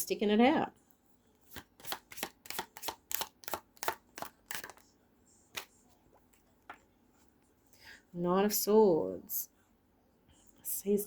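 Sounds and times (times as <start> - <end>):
cards being shuffled: 1.4 - 4.9, 5.5 - 6.8.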